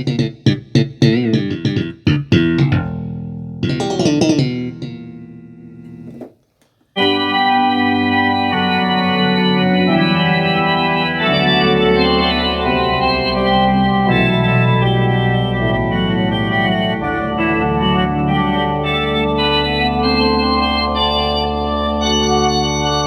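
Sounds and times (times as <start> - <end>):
organ-like synthesizer chords: 7.0 - 23.0
piano-like synthesizer chords: 7.0 - 23.0.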